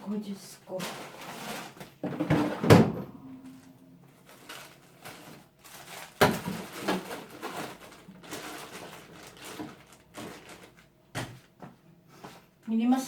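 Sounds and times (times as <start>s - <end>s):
food containers knocking and clattering: 0.8s - 3.2s, 6.1s - 11.8s
packaging rustling: 3.4s - 11.3s.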